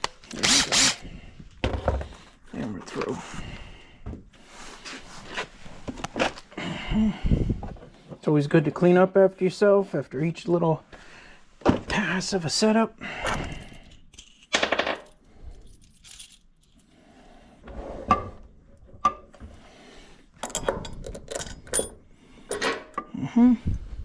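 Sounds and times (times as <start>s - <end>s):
metal tools clinking: 13.5s - 16.9s, 20.4s - 23.0s.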